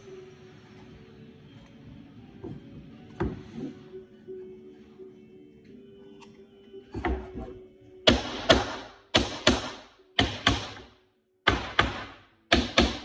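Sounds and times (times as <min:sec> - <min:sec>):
hammer striking nail into wood: 0:08.1 - 0:13.0.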